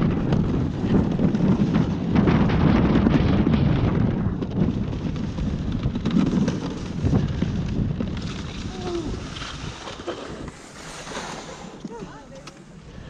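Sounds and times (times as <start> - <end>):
wind buffeting microphone: 0.0 - 13.0
toboggan scraping on ice: 4.9 - 12.4.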